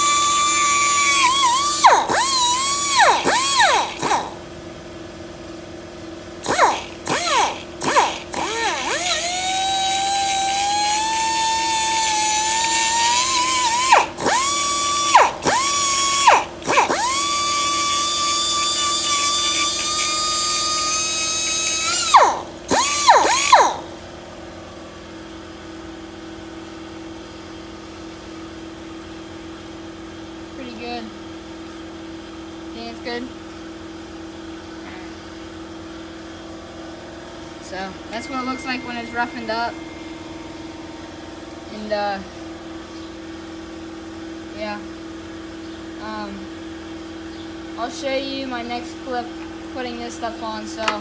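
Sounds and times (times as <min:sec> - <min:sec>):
air grinder whining: 0:00.0 - 0:04.5, 0:06.4 - 0:24.0.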